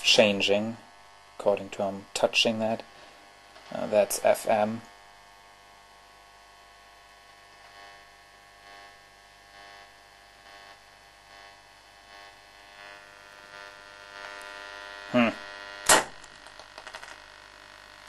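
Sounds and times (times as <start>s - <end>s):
radio loudspeaker mains hum: 0.0s - 18.0s.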